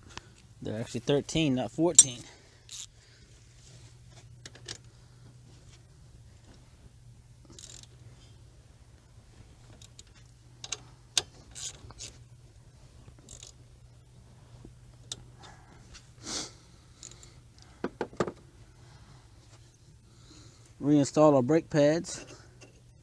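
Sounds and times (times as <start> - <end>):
steady low hum: 0.0 - 23.0
metal tools clicking and clanking: 1.0 - 2.9.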